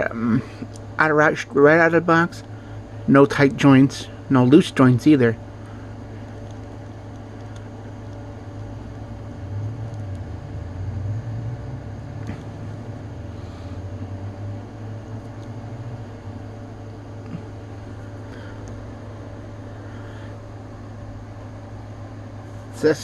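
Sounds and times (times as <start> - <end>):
low hum of fan: 0.0 - 23.0.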